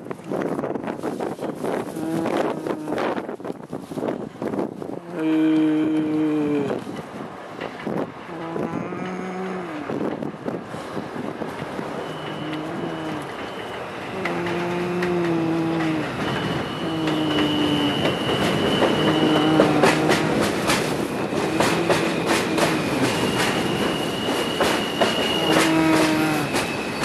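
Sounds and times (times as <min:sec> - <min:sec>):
subway train low hum: 0:00.0 - 0:27.0
wheels clicking over rail joints: 0:06.8 - 0:27.0
high wheel squeal: 0:12.0 - 0:27.0.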